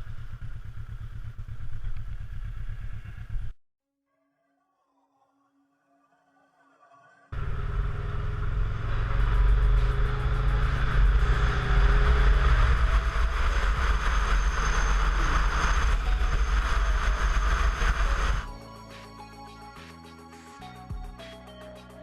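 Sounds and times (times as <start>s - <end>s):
motorcycle engine running: 0.0s - 3.6s, 7.4s - 18.6s.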